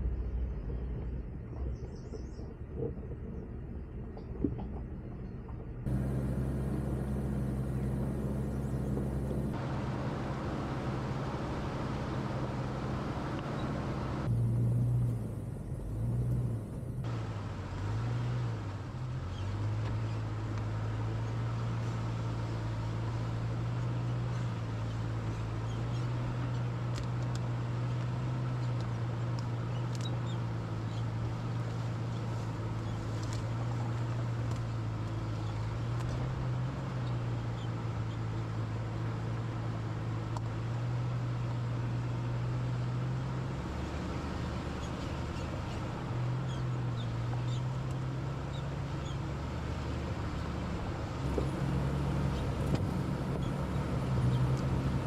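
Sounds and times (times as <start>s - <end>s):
car engine humming while driving: 0.0s - 55.0s
faint ticks and squeaks: 28.6s - 34.1s, 44.7s - 49.2s.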